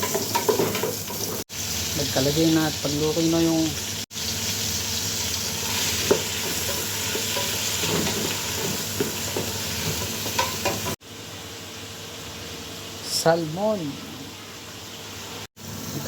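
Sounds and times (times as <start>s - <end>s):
onion sizzling in hot oil: 0.0s - 16.0s
utensil stirring in pan: 5.2s - 11.0s.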